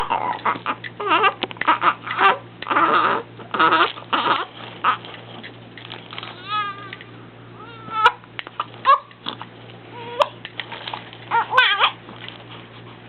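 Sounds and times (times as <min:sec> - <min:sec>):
child squealing and babbling: 0:06.3 - 0:07.0, 0:07.6 - 0:08.2, 0:11.3 - 0:12.0.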